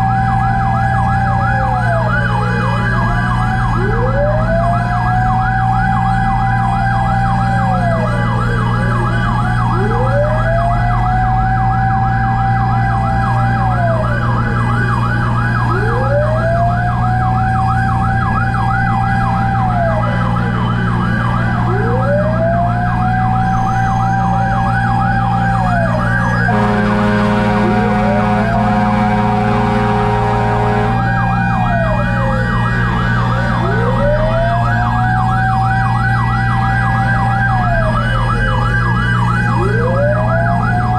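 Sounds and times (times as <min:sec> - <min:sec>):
siren wail: 0:00.0 - 0:40.9
siren yelp: 0:00.0 - 0:40.9
horn blast: 0:26.5 - 0:31.5
steady low drone: 0:26.5 - 0:32.4.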